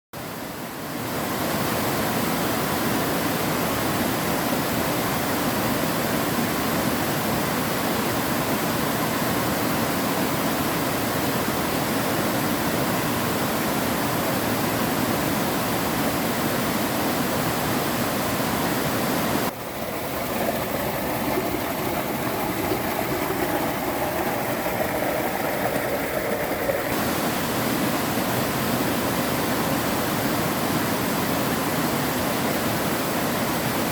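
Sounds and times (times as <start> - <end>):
waterfall rushing: 19.2 - 31.9.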